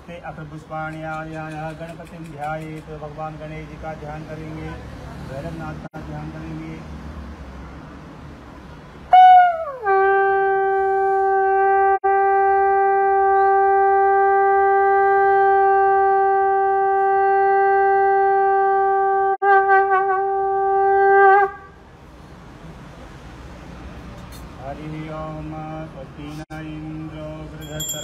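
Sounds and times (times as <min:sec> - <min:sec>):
conch shell blown: 0:09.1 - 0:21.8.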